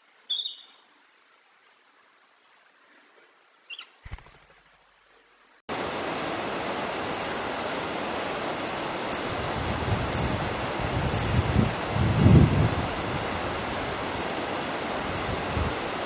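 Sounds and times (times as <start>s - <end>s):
background hiss: 5.4s - 16.0s
high bird chirps: 5.7s - 15.9s.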